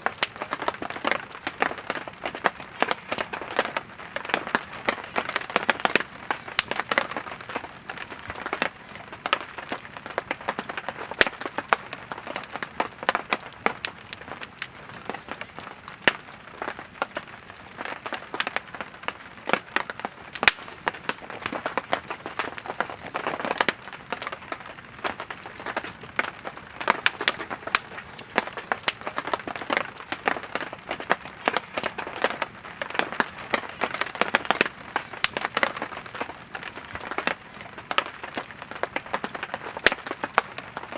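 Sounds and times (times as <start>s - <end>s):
campfire crackling: 0.0s - 40.9s
sharp fire pops: 9.3s - 40.9s.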